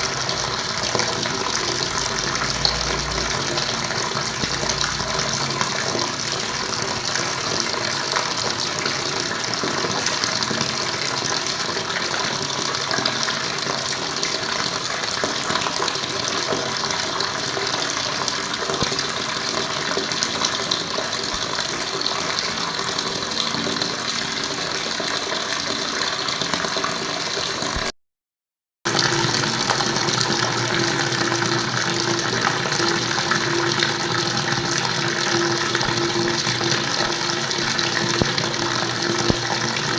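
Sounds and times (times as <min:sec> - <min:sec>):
running water rushing: 0:00.0 - 0:27.9, 0:28.9 - 0:39.9.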